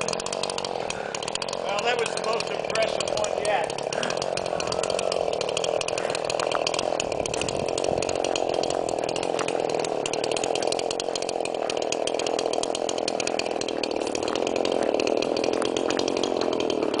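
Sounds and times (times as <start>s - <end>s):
chainsaw running: 0.0s - 17.0s.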